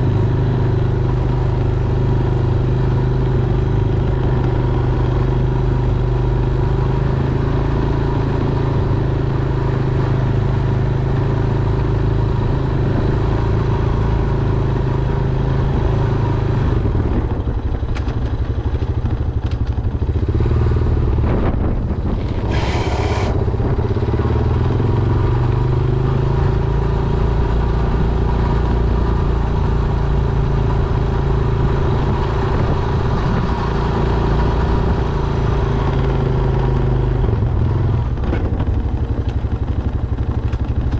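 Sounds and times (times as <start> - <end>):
atv engine running under load: 0.0 - 40.9
clatters: 17.2 - 20.0.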